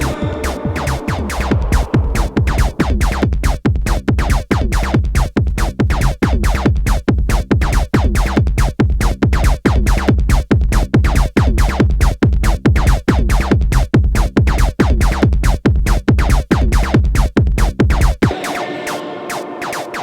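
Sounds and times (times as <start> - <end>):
deep synth bass line: 0.0 - 3.6
drum machine rhythm: 0.0 - 3.6.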